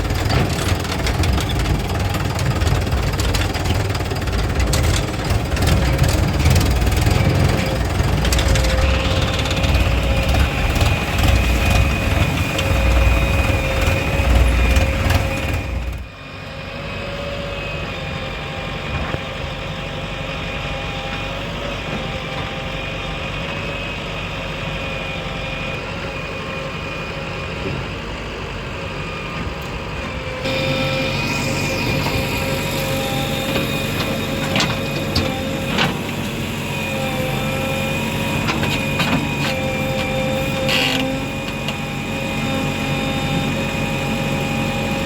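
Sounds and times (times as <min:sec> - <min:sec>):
steady whine: 0:00.0 - 0:19.9, 0:29.0 - 0:45.0
diesel engines running: 0:00.0 - 0:45.0.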